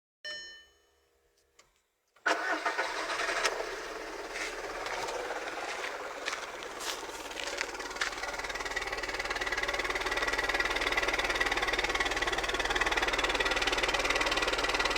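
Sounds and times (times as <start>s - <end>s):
car engine misfiring: 2.3s - 14.9s.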